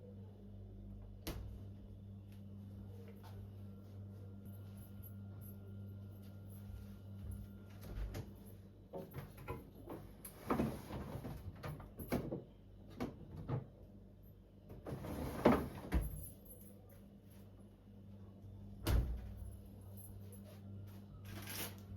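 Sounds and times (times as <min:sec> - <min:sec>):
faint low hum: 0:00.0 - 0:21.9
fridge drawers sliding: 0:10.3 - 0:11.6, 0:14.8 - 0:16.1.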